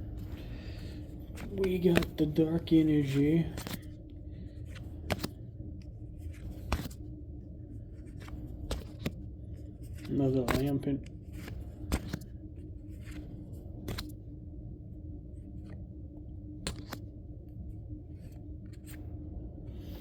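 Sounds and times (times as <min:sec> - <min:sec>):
faint hum: 0:00.0 - 0:20.0
trading cards being flipped: 0:00.2 - 0:03.9, 0:04.7 - 0:05.4, 0:06.2 - 0:07.1, 0:08.0 - 0:09.2, 0:09.8 - 0:14.2, 0:16.6 - 0:17.0.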